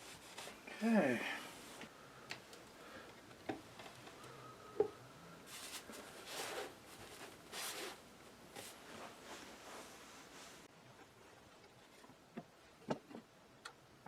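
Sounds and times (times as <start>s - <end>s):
soft rubbing swishes: 5.5s - 10.7s.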